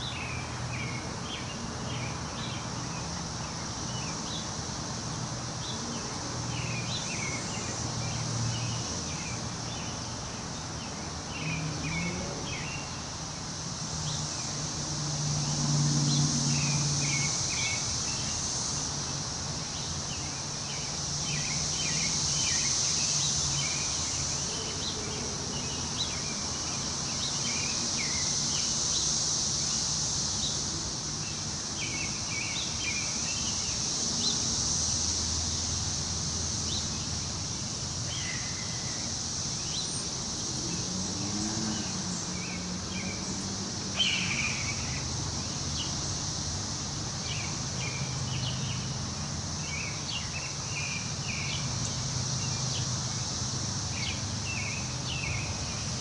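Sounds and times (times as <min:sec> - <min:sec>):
high insect drone: 0:00.0 - 0:56.0.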